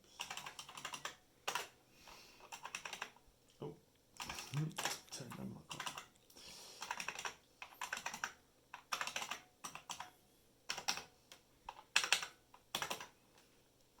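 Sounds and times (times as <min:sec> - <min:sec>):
keyboard typing: 0:00.2 - 0:01.8, 0:02.4 - 0:03.2, 0:04.2 - 0:06.2, 0:06.8 - 0:10.1, 0:10.7 - 0:13.2.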